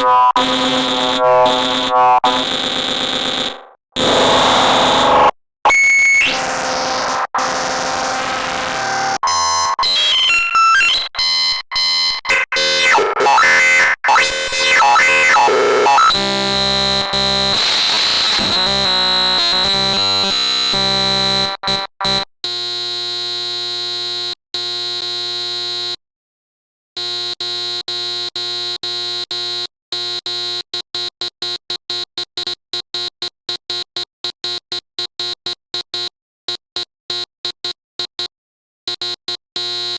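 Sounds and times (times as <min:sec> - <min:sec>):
dense electronic buzz: 0:00.4 - 0:05.3.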